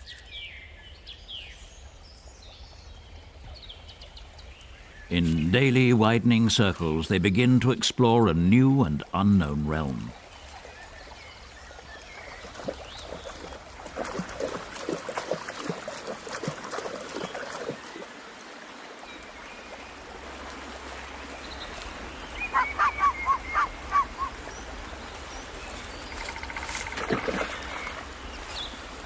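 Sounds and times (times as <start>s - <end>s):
soft watery hiss: 17.1s - 22.5s.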